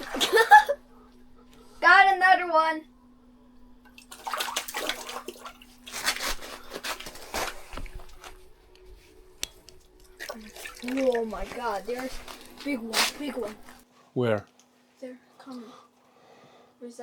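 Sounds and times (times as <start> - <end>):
water splashing and sloshing: 0.0 - 0.8, 3.8 - 13.8.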